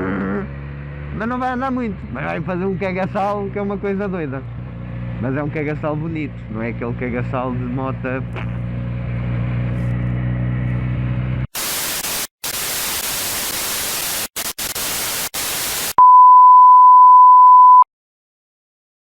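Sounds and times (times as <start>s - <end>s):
motorcycle engine running: 0.0s - 11.5s
white-noise static: 11.6s - 16.0s
high-pitched test-tone beep: 16.0s - 17.8s.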